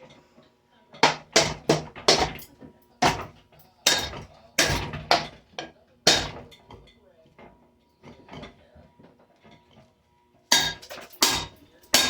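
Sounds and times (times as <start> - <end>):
sharp hard knocks on ceiling fan: 1.0 - 3.3.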